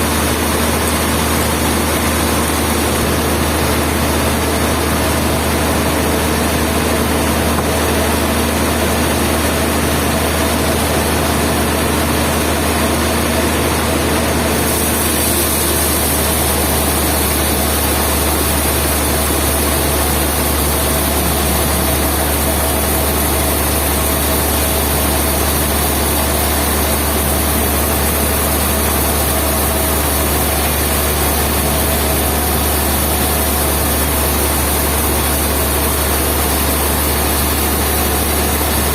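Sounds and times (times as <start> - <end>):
heavy sawmill machinery running: 0.0 - 38.9
low hum: 15.5 - 32.7.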